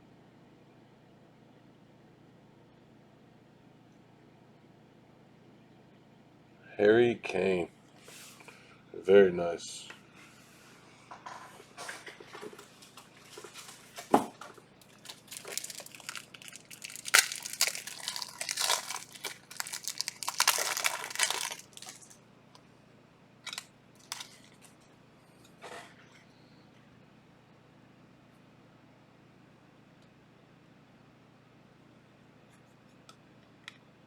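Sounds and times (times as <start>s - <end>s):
cards clicking and rustling: 14.8s - 22.1s, 23.5s - 24.7s
card wrappers crinkling and tearing: 14.8s - 22.2s, 23.5s - 24.8s.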